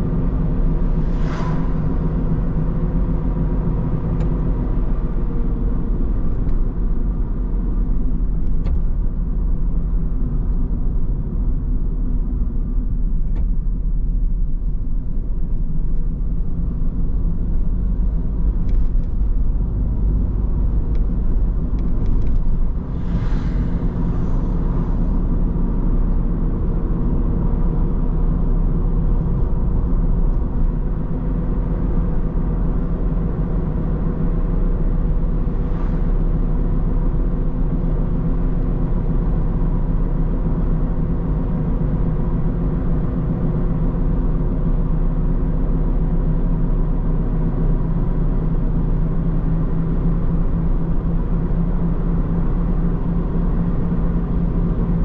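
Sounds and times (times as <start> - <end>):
car engine and road rumble: 0.0 - 55.0
short rush of noise: 0.4 - 4.2, 22.1 - 26.1, 34.6 - 37.6.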